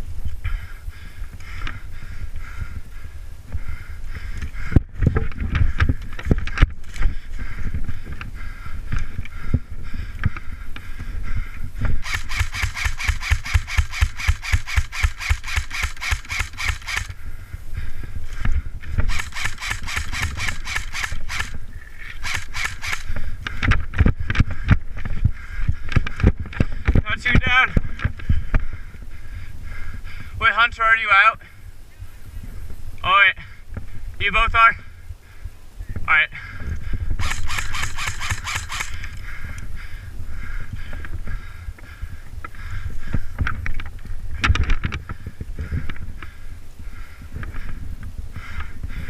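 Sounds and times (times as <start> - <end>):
airsoft rifle firing clicks: 12.0 - 17.2, 19.0 - 23.2, 37.2 - 39.2.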